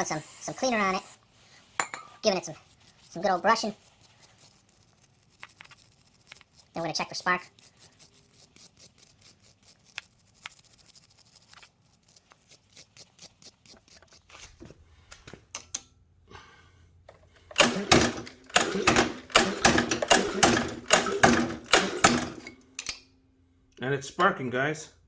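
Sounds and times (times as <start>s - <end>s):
recoil starter clicking: 17.1s - 23.0s.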